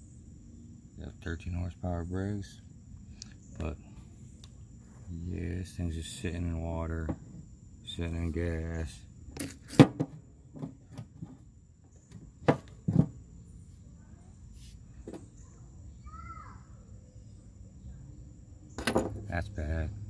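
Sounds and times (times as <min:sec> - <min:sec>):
faint chirp: 0:13.4 - 0:19.9.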